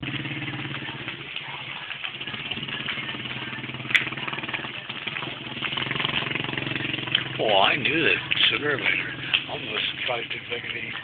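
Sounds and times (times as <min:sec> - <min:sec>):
small engine idling: 0:00.0 - 0:11.0.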